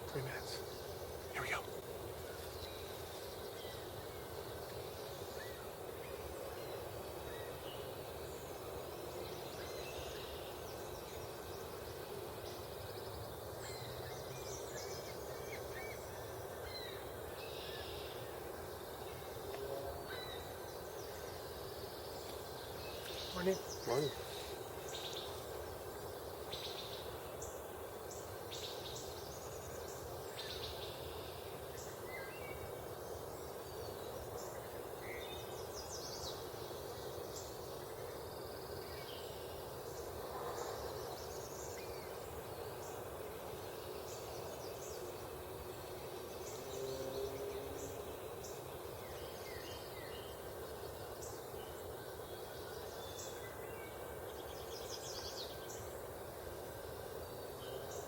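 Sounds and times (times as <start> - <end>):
birds chirping: 0.0 - 11.7, 18.8 - 27.7
low background rush: 0.0 - 58.0.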